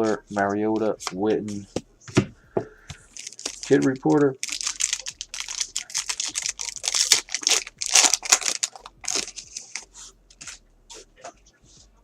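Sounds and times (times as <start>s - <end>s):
foil wrapper tearing and crinkling: 3.1s - 10.5s.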